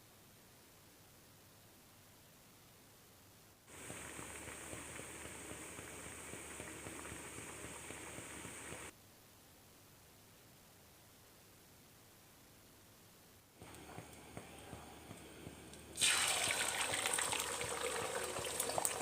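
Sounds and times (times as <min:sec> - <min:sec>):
food sizzling in a pan: 0:03.7 - 0:08.9, 0:15.5 - 0:19.0.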